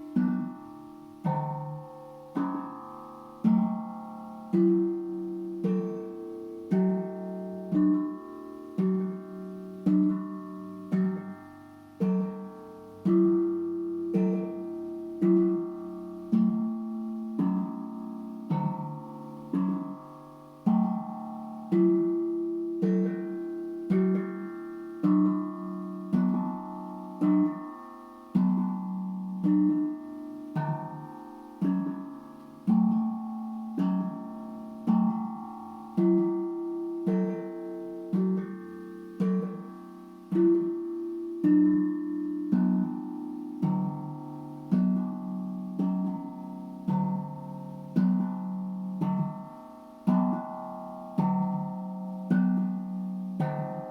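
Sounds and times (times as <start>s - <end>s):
steel tongue drum melody: 0.0s - 53.9s.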